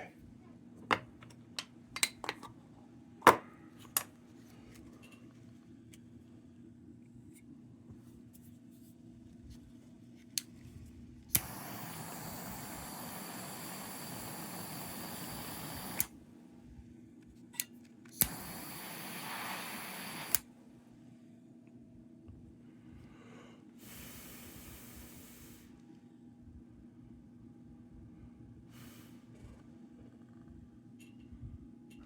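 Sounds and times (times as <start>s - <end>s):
pressurised nozzle hissing: 11.3s - 16.1s, 18.2s - 20.4s
small clicks: 14.1s - 16.1s.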